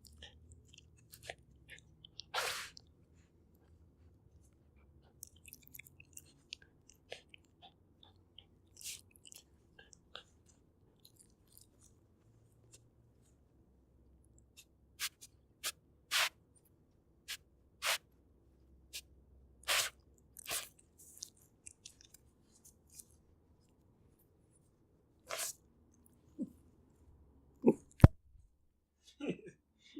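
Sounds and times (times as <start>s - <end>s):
dog sniffing licking and chewing: 19.7s - 22.2s.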